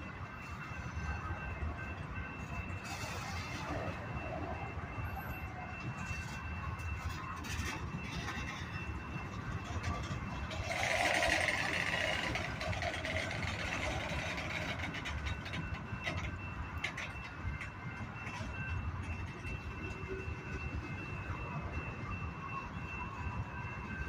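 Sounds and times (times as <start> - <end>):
freight train rumbling: 0.0 - 24.0
train wheel clicks: 9.6 - 20.1.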